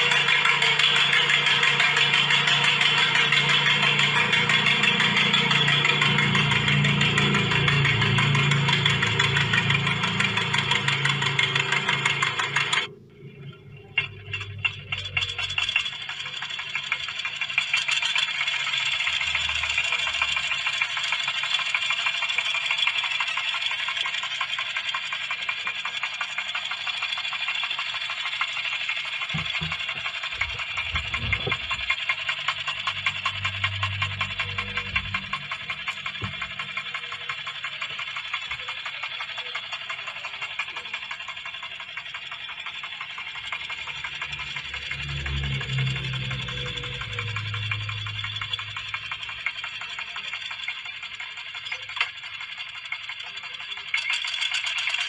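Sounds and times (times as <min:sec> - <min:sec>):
motor rattling: 0:00.0 - 0:55.0.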